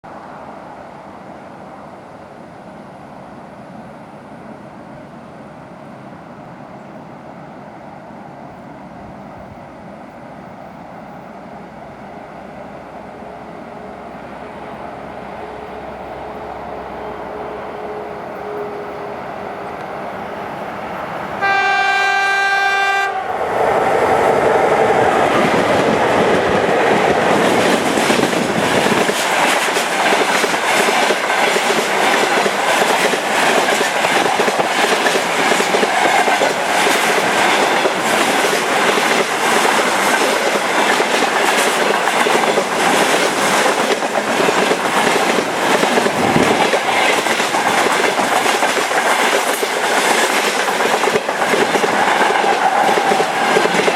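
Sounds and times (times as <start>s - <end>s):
train wheels rumbling: 5.8s - 53.9s
locomotive horn: 14.7s - 19.8s, 21.4s - 23.4s
wheels clacking over rail joints: 24.8s - 53.9s.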